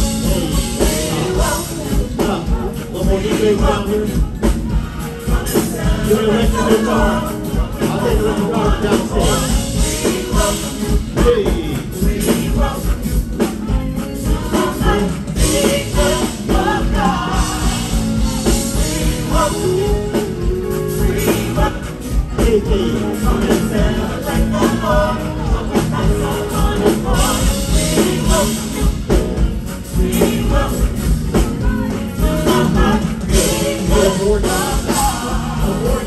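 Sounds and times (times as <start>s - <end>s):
person singing lead: 0.0s - 13.2s
gospel band playing: 0.0s - 36.0s.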